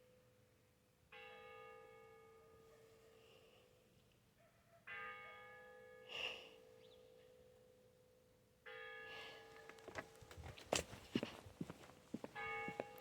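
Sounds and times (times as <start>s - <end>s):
church bell tolling: 1.1s - 2.9s, 4.9s - 6.1s, 8.7s - 10.0s, 12.3s - 13.0s.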